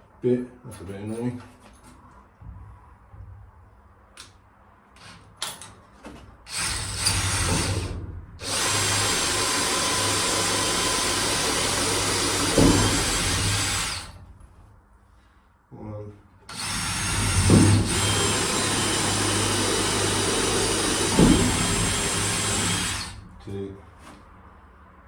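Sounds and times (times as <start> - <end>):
power drill drilling: 6.5 - 14.2, 16.5 - 23.2.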